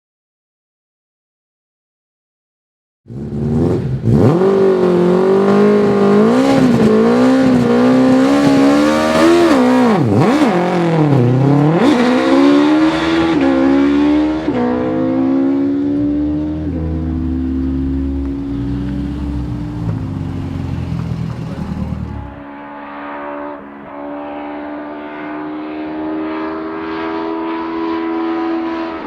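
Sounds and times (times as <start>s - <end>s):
race car engine at hard throttle: 3.1s - 29.0s.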